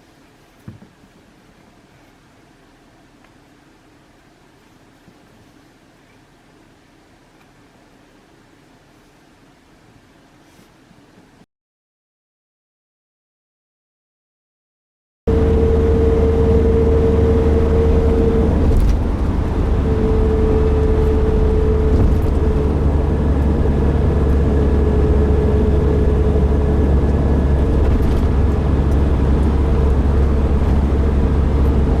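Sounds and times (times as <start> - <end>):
van road and engine rumble: 15.3 - 32.0.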